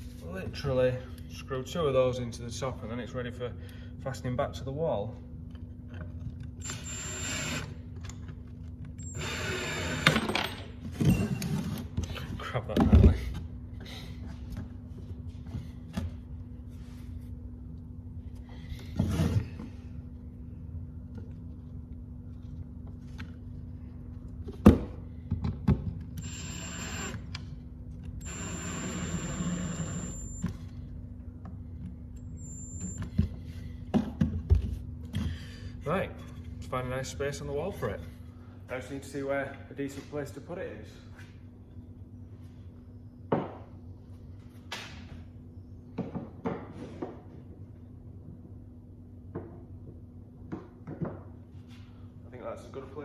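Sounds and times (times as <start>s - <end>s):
steady low hum: 0.0s - 53.0s
cordless drill whining: 6.6s - 7.8s, 9.0s - 10.2s, 26.2s - 27.3s, 28.2s - 30.5s.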